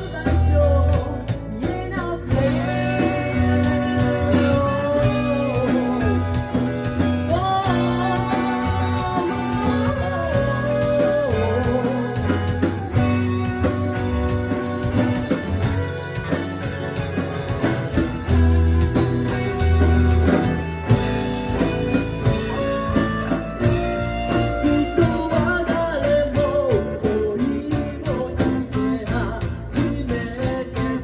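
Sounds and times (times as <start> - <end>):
guitar and bass chords: 0.0 - 31.0.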